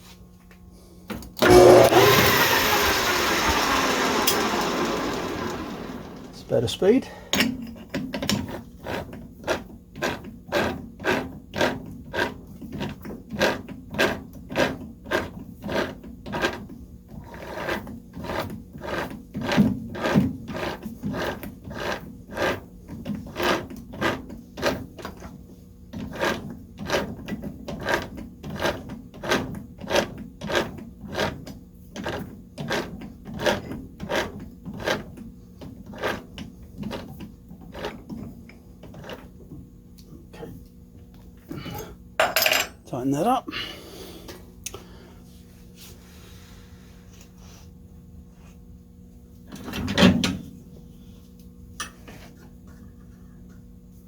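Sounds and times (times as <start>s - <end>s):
metal lathe humming: 1.4s - 7.0s.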